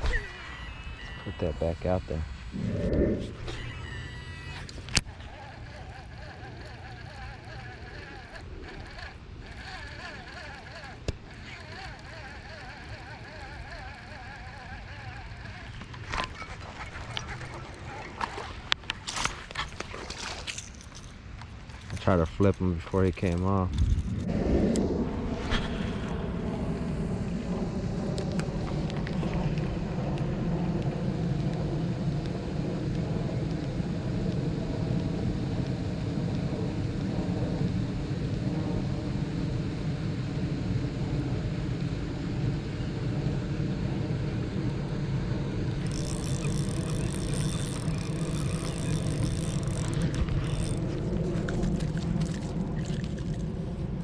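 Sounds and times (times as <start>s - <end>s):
dirt bike engine running: 45.7s - 53.8s.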